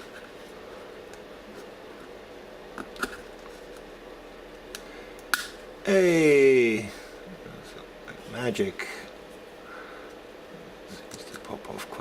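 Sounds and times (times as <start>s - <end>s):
faint steady hum: 0.0s - 12.0s
plastic part snapping off: 4.7s - 5.6s.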